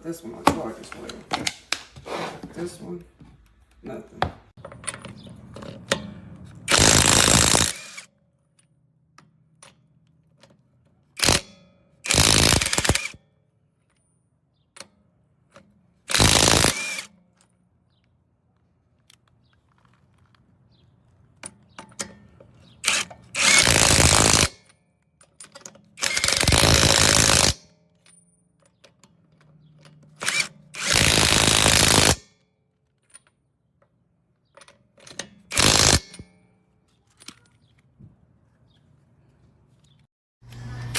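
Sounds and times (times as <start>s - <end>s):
cordless impact wrench bursts: 6.7s - 8.1s, 11.2s - 11.4s, 12.1s - 13.2s, 16.1s - 17.1s, 22.8s - 24.6s, 26.0s - 27.7s, 30.2s - 32.2s, 35.5s - 36.2s.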